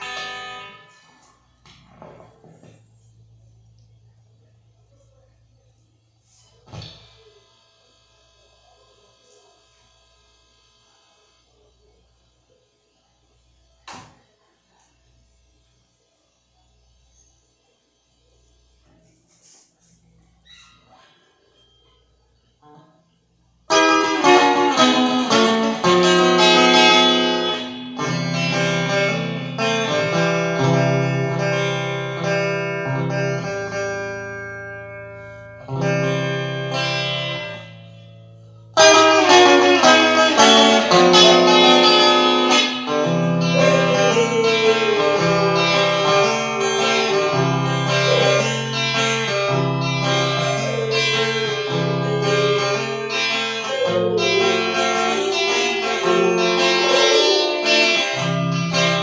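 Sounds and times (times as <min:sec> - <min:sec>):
guitar playing chords: 0:00.0 - 0:01.3, 0:23.7 - 0:59.0.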